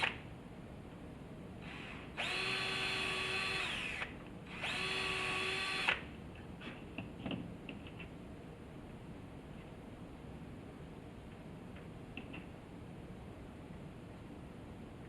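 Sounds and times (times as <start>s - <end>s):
power drill driving screws: 1.6s - 6.0s.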